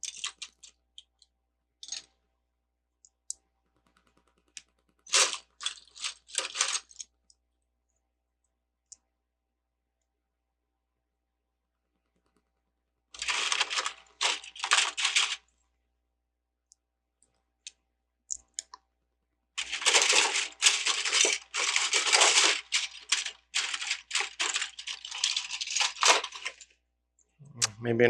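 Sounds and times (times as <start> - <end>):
plastic bricks clattering: 0.0 - 0.7, 5.1 - 7.1, 13.2 - 15.4, 19.6 - 26.7.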